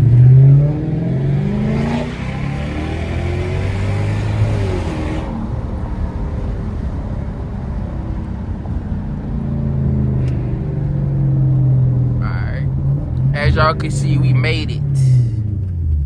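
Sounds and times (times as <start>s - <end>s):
car engine droning: 0.0s - 16.0s.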